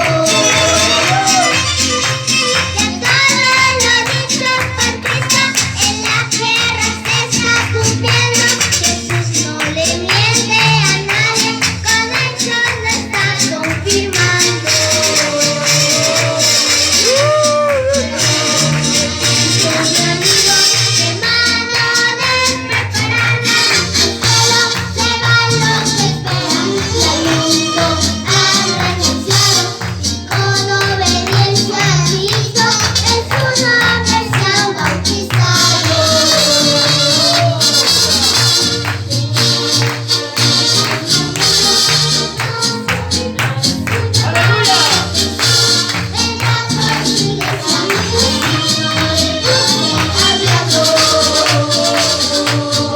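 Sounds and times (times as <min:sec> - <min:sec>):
person singing: 0:00.0 - 0:52.9
shaken or struck percussion: 0:13.5 - 0:22.7, 0:23.4 - 0:52.9.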